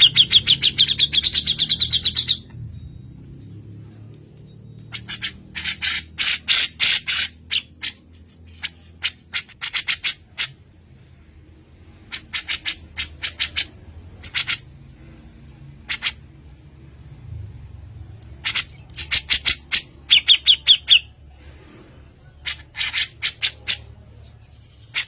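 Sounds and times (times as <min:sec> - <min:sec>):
harsh chattering bird calls: 0:00.0 - 0:02.6, 0:04.8 - 0:10.6, 0:12.0 - 0:16.4, 0:18.2 - 0:21.2, 0:22.1 - 0:25.0
faint low hum: 0:00.0 - 0:25.0.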